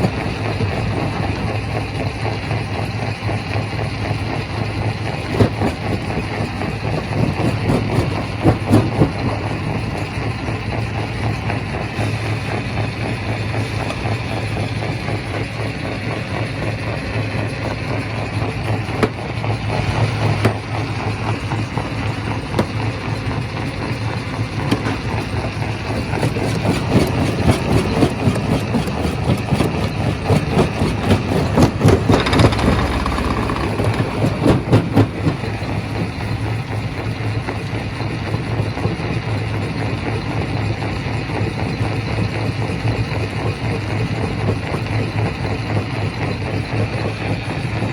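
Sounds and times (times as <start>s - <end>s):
rock crusher humming: 0.0s - 38.1s.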